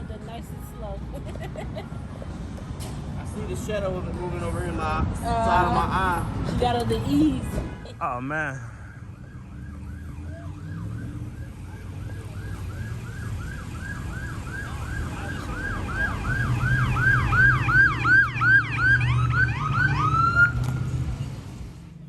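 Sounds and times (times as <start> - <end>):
siren yelping: 8.7 - 20.6.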